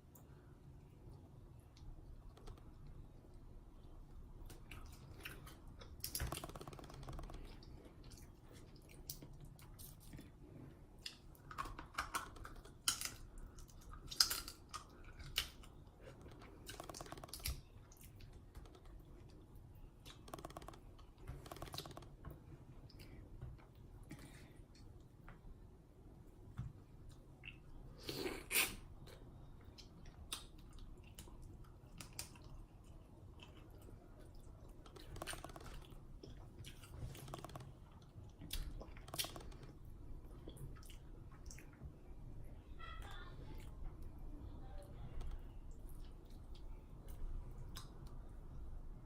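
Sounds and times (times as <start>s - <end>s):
chewing seafood clicking: 1.1s - 10.4s, 11.0s - 22.2s, 28.5s - 41.9s.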